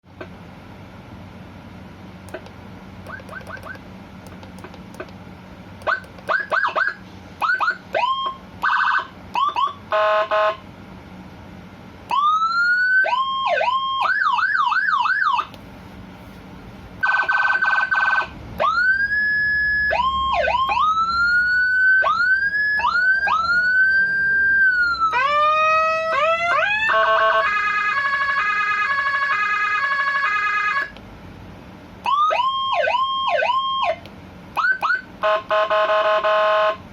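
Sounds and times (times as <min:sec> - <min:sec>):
electronic siren tones: 0:02.3 - 0:03.8, 0:05.8 - 0:10.1, 0:17.0 - 0:31.0, 0:32.0 - 0:34.0.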